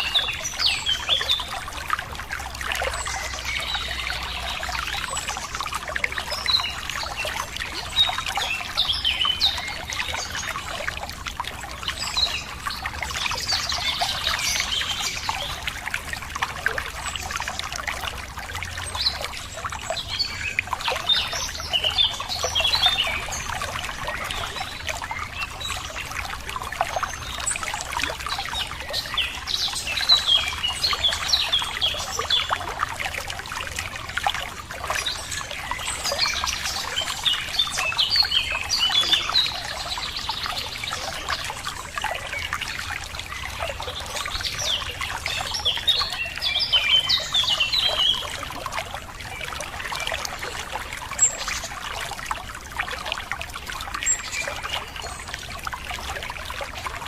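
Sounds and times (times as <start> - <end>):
water trickling and splashing: 0.0 - 57.0.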